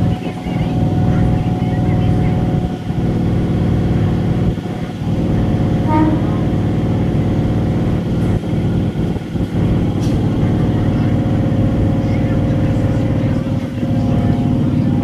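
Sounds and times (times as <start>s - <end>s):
electric train motor hum: 0.0s - 15.0s.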